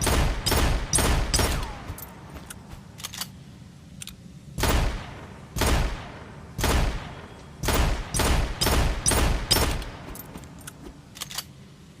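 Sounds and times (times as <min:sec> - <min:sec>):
pistol gunshots with echo: 0:00.0 - 0:02.0, 0:04.6 - 0:10.0
light metallic clicks and rattles: 0:01.4 - 0:04.3, 0:09.1 - 0:11.6.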